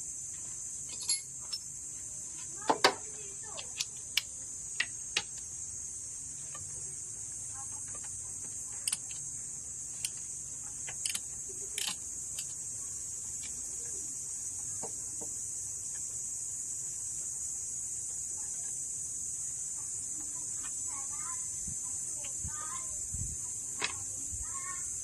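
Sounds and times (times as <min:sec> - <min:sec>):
high-pitched hiss: 0:00.0 - 0:25.0
hand tools clinking on metal: 0:00.9 - 0:01.7.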